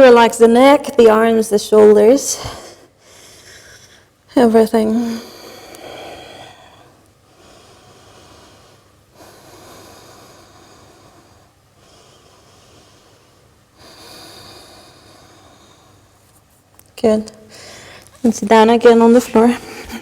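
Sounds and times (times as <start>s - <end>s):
woman breathing slowly: 2.3s - 4.3s, 5.0s - 16.4s, 17.5s - 18.2s.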